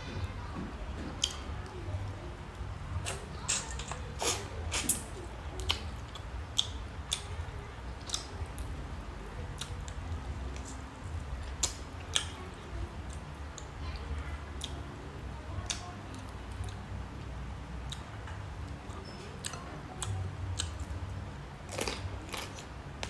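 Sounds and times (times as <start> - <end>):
low steady hum: 0.0 - 23.0
chewing: 1.0 - 15.0, 17.9 - 23.0
mouth clicks and smacks: 3.0 - 7.3.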